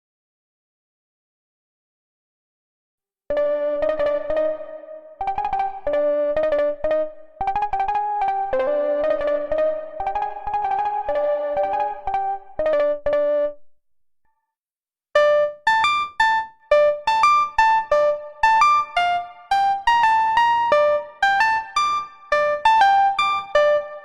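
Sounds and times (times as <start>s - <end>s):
plucky synthesizer notes: 3.3s - 13.6s.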